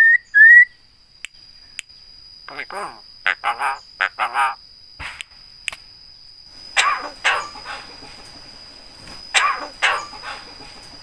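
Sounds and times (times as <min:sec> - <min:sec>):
myna harsh calls: 0:02.5 - 0:04.6, 0:06.8 - 0:07.9, 0:09.3 - 0:10.5.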